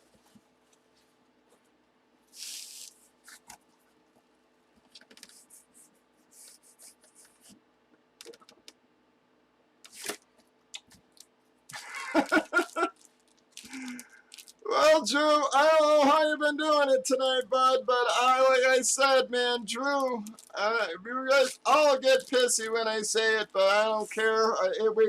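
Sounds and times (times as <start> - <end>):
rustling of card and plastic: 2.4 - 3.6, 9.9 - 10.2, 10.9 - 14.7, 20.2 - 20.6, 21.4 - 22.5.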